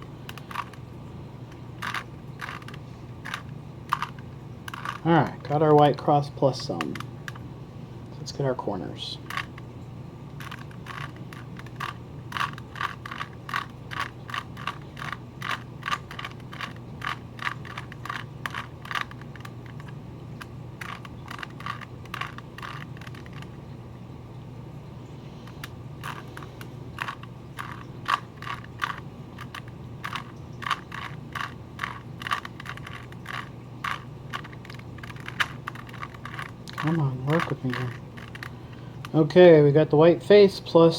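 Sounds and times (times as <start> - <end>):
steady low hum: 0.0 - 40.9
plastic puzzle cube clicking: 0.3 - 0.8, 1.8 - 5.1, 6.7 - 7.4, 9.3 - 9.6, 10.4 - 23.6, 25.4 - 39.2.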